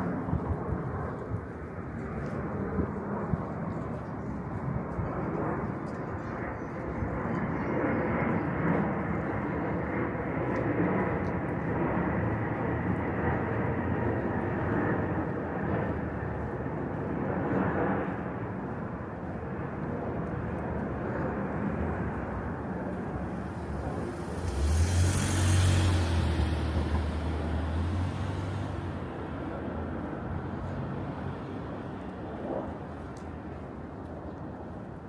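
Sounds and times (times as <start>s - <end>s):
city street low rumble: 0.0s - 35.0s
car passing by: 22.8s - 31.7s.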